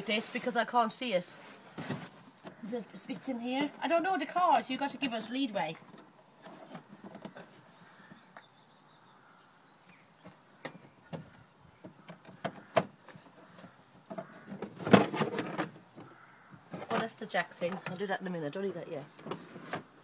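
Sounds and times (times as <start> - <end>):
things rummaged in car boot: 1.6 - 2.3, 6.0 - 7.6, 12.2 - 15.8.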